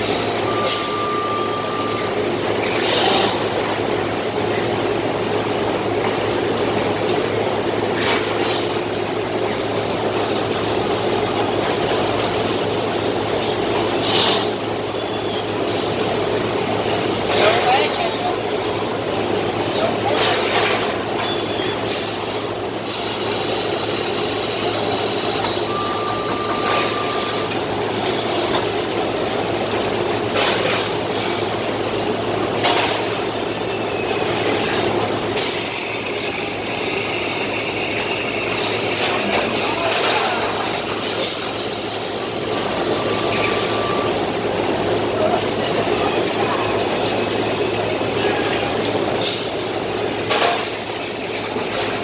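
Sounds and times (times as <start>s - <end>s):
machinery humming: 0.0s - 52.0s
brief tones: 0.4s - 2.2s, 25.3s - 27.6s.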